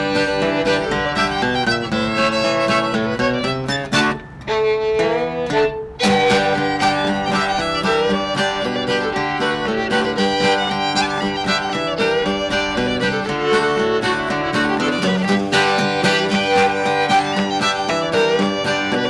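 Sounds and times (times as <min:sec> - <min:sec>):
acoustic guitar chords: 0:00.0 - 0:19.0
fiddle melody: 0:00.0 - 0:19.0.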